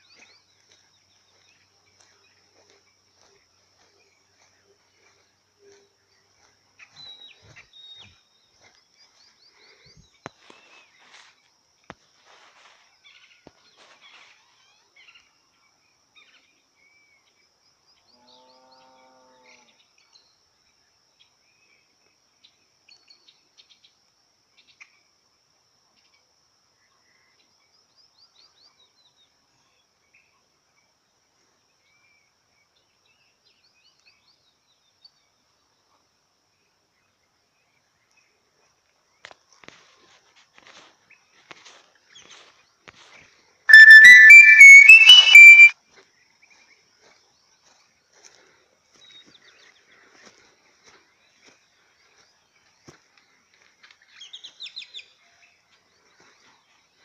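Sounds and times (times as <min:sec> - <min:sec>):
bird chirps: 0:43.7 - 0:45.7.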